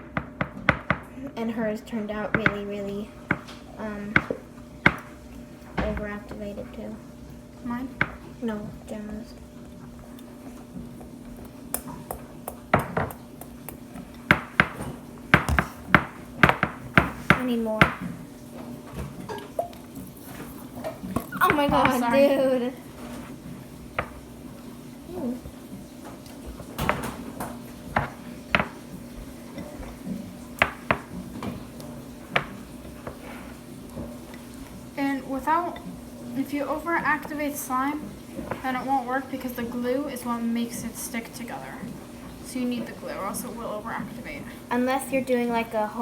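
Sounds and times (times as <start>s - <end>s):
utensil tapping against a bowl: 4.2s - 5.1s, 11.7s - 18.1s, 30.6s - 31.1s.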